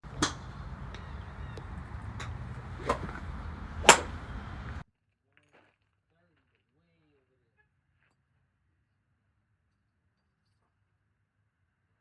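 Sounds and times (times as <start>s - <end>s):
golf clubs striking balls: 0.0s - 4.8s
steady low rumble: 0.0s - 4.8s.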